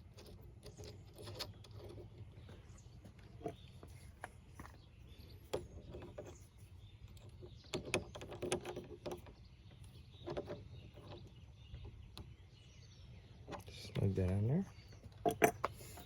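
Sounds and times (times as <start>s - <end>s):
small metal clicks and clinks: 15.2s - 16.0s.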